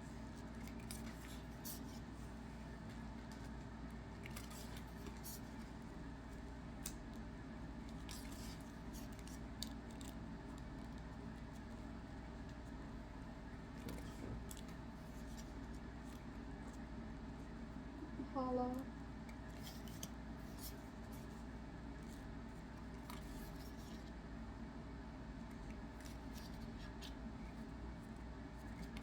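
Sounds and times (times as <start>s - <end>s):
steady low hum: 0.0s - 29.0s
cards clicking and rustling: 0.4s - 2.1s, 3.2s - 5.8s, 7.8s - 11.8s, 13.7s - 16.8s, 19.2s - 21.4s, 22.0s - 24.1s, 25.5s - 27.7s.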